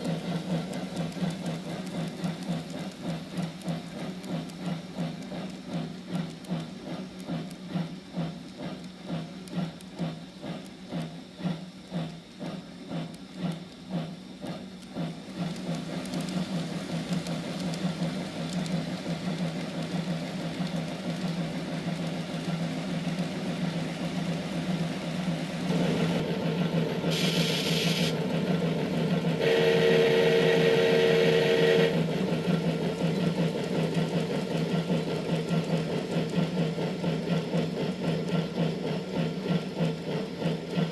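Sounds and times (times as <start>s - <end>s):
model train motor and wheel hum: 0.0s - 40.9s
steam locomotive chuffing: 0.0s - 40.9s
steam hiss: 27.1s - 28.2s
steam whistle: 29.4s - 32.1s.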